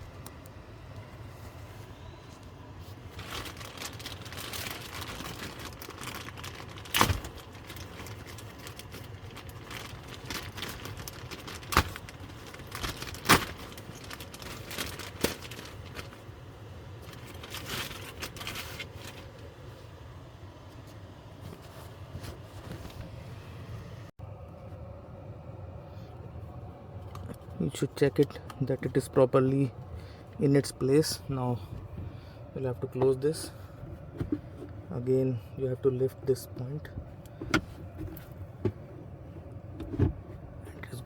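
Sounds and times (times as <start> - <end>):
packaging rustling: 3.0 - 16.3, 17.1 - 19.4.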